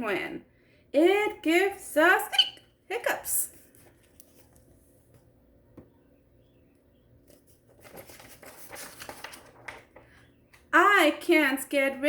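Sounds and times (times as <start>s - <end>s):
rustling and crinkling handling noise: 3.5s - 5.3s, 7.2s - 10.7s.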